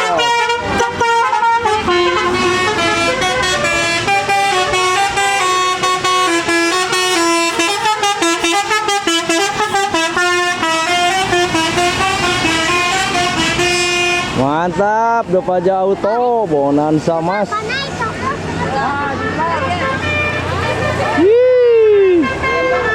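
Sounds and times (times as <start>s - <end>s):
musical air horn melody: 0.0s - 14.4s, 19.2s - 21.3s, 21.9s - 22.9s.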